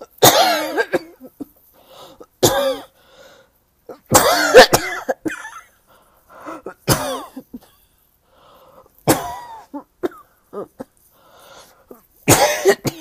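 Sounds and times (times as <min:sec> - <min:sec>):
person coughing harshly: 0:00.0 - 0:01.5, 0:02.4 - 0:03.0, 0:03.9 - 0:05.7, 0:06.4 - 0:07.9, 0:09.0 - 0:11.1, 0:11.9 - 0:13.0
faint intakes of breath: 0:02.9 - 0:03.6, 0:08.2 - 0:09.0, 0:11.0 - 0:12.0.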